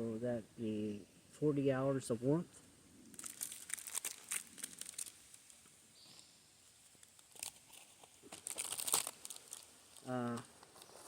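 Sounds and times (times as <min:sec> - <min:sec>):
plastic packaging crinkling: 0:03.1 - 0:05.6, 0:07.0 - 0:11.0.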